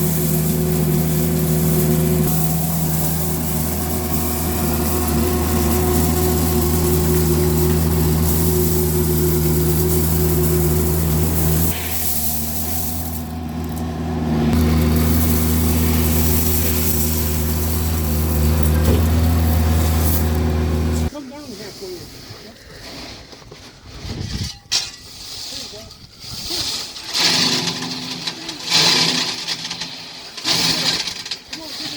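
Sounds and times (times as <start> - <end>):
skid steer engine running: 0.0 - 21.1.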